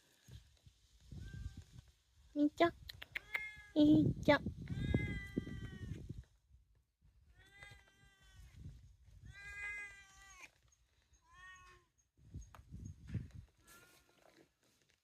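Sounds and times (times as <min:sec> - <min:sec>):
cat meowing: 0:03.2 - 0:03.8, 0:04.7 - 0:06.0, 0:09.3 - 0:10.5, 0:11.2 - 0:11.9.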